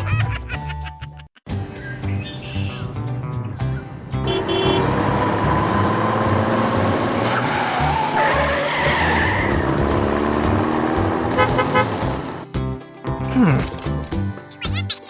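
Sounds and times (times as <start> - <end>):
background music: 0.0 - 15.0
car engine running: 4.2 - 12.4
tyres squealing and skidding: 4.3 - 12.3.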